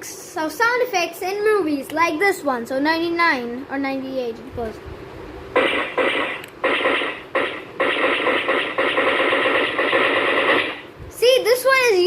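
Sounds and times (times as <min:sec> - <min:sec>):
keyboard gunfire sound effect: 0:05.6 - 0:10.9.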